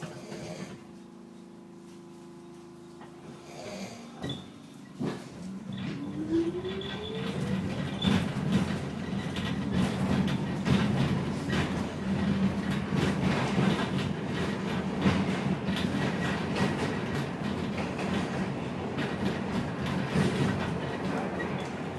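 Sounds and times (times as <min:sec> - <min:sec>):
subway train whine: 0:00.0 - 0:21.9
wheels clattering over rails: 0:05.0 - 0:21.9.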